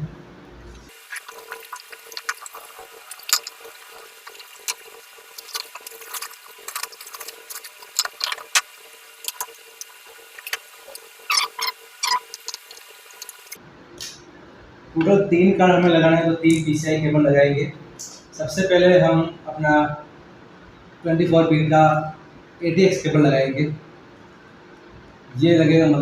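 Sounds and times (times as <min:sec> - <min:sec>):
packaging crinkling: 0:00.9 - 0:13.5.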